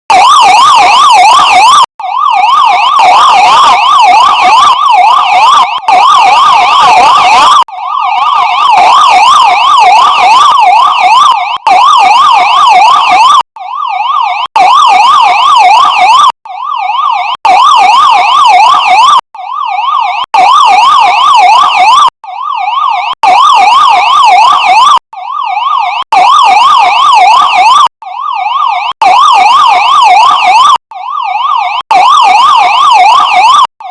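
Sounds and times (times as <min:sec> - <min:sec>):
police siren yelping: 0:00.1 - 0:33.9.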